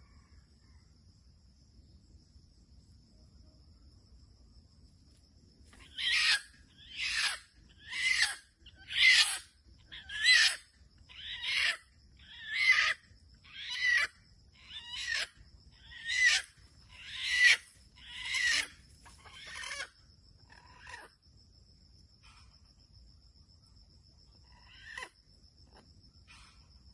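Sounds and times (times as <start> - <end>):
insect trill: 0.0 - 26.9
junglefowl harsh calls: 5.8 - 21.1.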